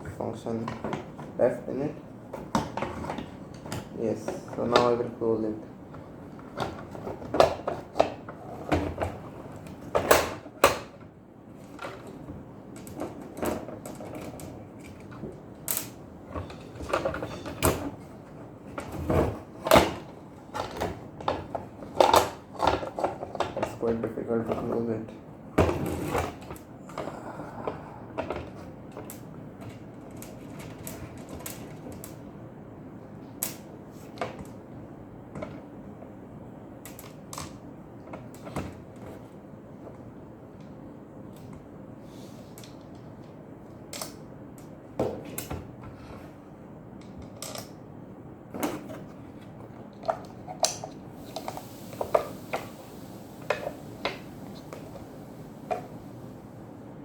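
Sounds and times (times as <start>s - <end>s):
steady low hiss: 50.1s - 57.0s.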